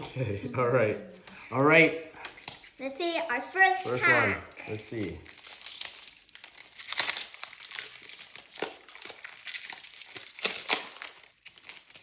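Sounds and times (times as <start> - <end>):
foil wrapper crinkling: 4.5 - 12.0.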